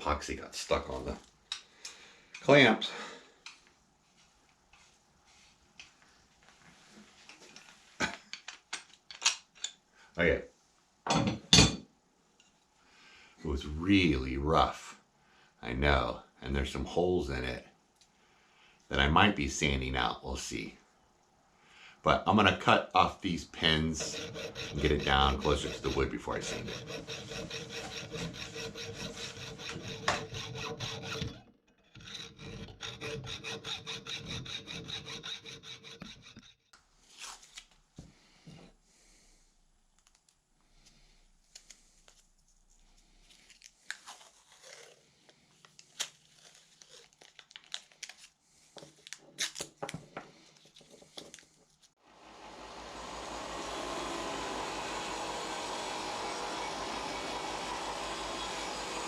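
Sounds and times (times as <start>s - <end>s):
hand saw cutting: 23.6s - 36.6s, 52.4s - 59.0s
steady motor-like noise: 52.2s - 59.0s.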